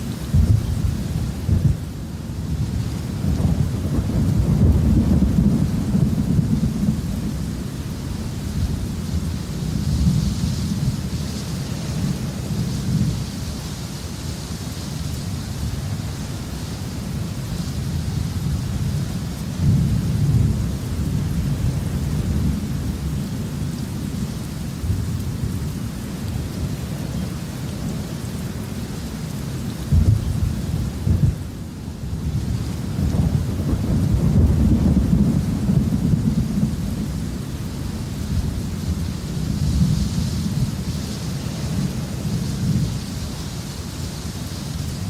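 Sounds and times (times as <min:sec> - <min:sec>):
rain hissing: 0:00.0 - 0:45.0
thunder rumbling: 0:00.2 - 0:01.9, 0:02.5 - 0:13.2, 0:29.8 - 0:43.3.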